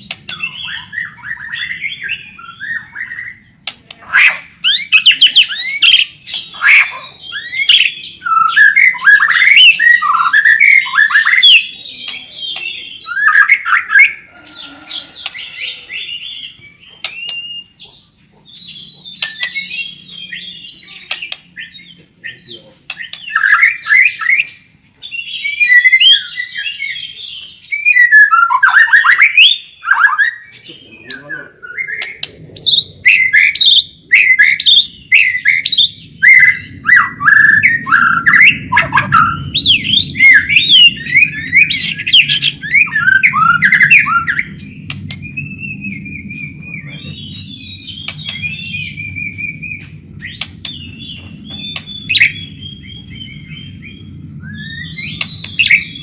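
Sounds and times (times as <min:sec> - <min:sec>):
songbird singing whistled phrases: 0:00.0 - 0:14.2, 0:15.2 - 0:18.0, 0:18.6 - 0:56.0
low steady hum: 0:30.6 - 0:56.0.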